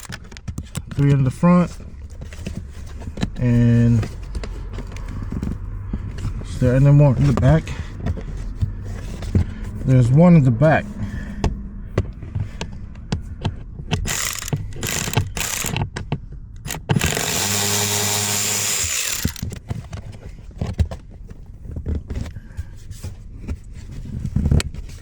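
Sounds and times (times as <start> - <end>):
ratchet clicks and rattles: 0.0 - 1.1, 13.9 - 19.6
power tool running: 14.0 - 15.8, 16.7 - 19.6.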